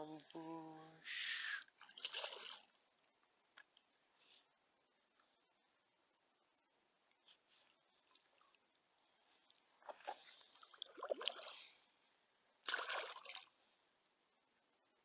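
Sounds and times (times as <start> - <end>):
water sloshing and splashing: 1.8 - 2.8, 9.8 - 11.8, 12.6 - 13.6.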